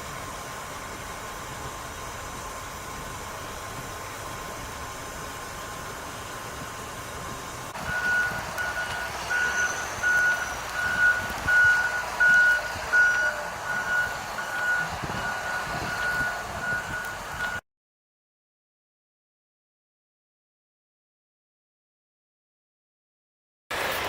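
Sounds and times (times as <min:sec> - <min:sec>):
vehicle reversing alarm beeping: 0:04.4 - 0:17.6.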